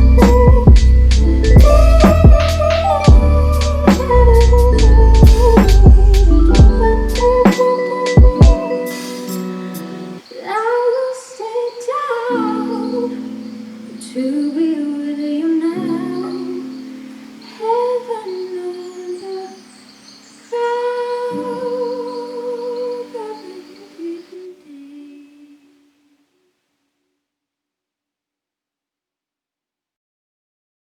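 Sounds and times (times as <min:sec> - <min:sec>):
woman humming: 0:00.0 - 0:09.0
sustained piano chords: 0:00.0 - 0:10.2.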